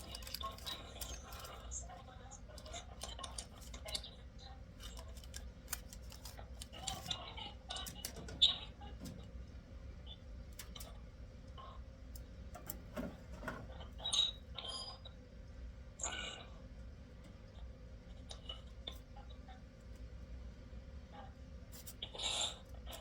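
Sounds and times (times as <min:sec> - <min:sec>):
small objects clicking and tapping: 0:00.0 - 0:01.7
steady low hum: 0:00.0 - 0:23.0.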